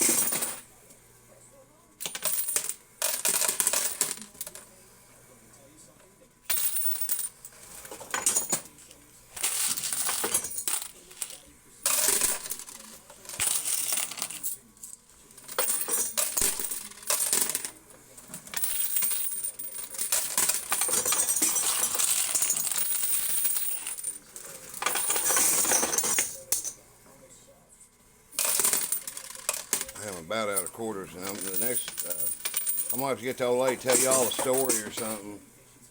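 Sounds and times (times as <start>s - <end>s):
metal coins rattling and spilling: 0.0s - 0.6s, 2.0s - 4.3s, 6.5s - 8.6s, 9.4s - 14.6s, 15.4s - 17.7s, 18.3s - 24.1s, 24.7s - 26.7s, 28.4s - 30.6s, 31.2s - 35.2s.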